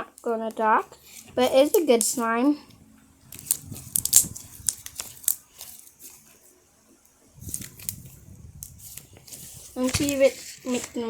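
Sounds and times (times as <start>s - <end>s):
soft rustle: 0.5s - 6.7s, 7.3s - 11.0s
slime clicking and crackling: 3.3s - 5.4s.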